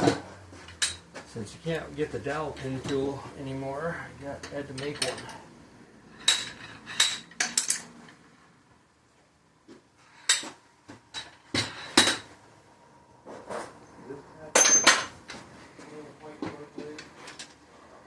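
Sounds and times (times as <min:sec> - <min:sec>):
metal-on-metal clinks and knocks: 0:00.0 - 0:01.1, 0:04.4 - 0:05.4, 0:06.1 - 0:08.2, 0:14.5 - 0:15.4.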